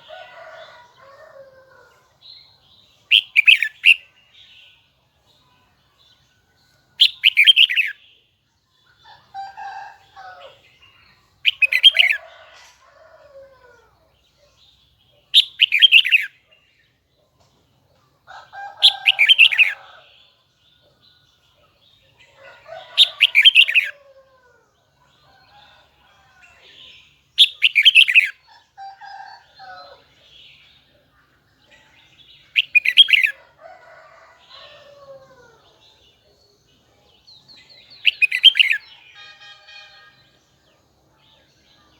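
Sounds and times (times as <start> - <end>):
bird singing high phrases: 7.0 - 8.3, 15.1 - 16.4, 26.5 - 28.4, 37.3 - 40.4.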